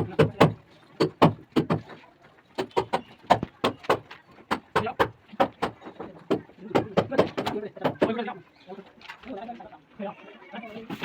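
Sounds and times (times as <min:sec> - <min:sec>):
hard objects knocking: 0:00.0 - 0:02.0, 0:02.6 - 0:08.2.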